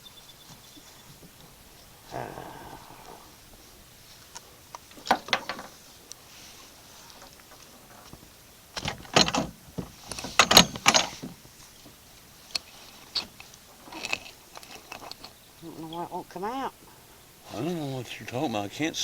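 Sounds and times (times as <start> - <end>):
gear knocking and rattling: 5.0 - 5.8, 7.1 - 11.5.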